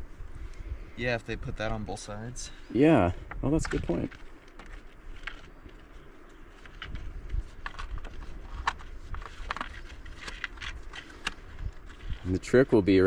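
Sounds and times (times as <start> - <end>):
stick clip clicks and rustles: 6.6 - 12.2.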